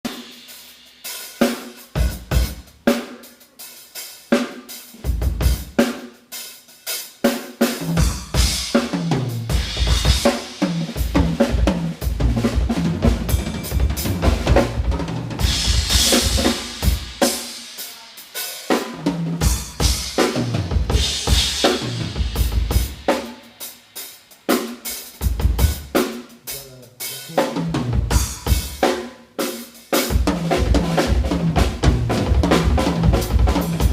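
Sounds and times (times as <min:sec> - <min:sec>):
drum kit playing: 0:00.0 - 0:33.9
cymbal crashes: 0:13.3 - 0:14.8.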